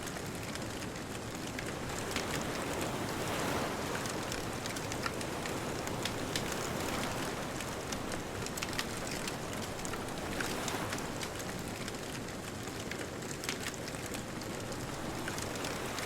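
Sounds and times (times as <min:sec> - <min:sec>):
wood fire crackling and popping: 0:00.0 - 0:16.0
distant ocean surf: 0:01.5 - 0:12.2, 0:14.0 - 0:16.0.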